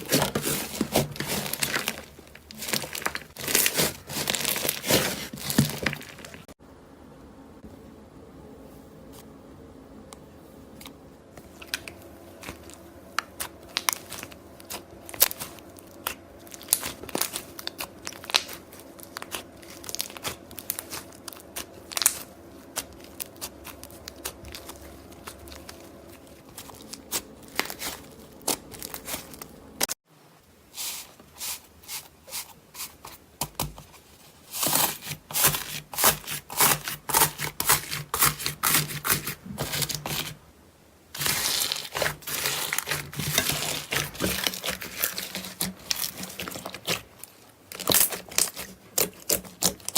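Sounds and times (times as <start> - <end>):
slime crackling and popping: 11.7 - 29.5, 41.2 - 49.9.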